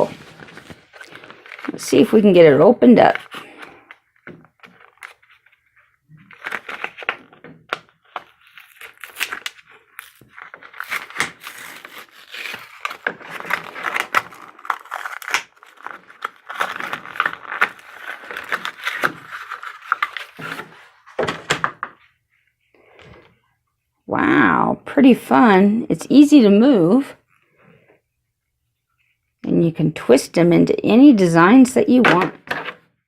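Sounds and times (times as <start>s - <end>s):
packaging being torn open: 6.3s - 20.7s.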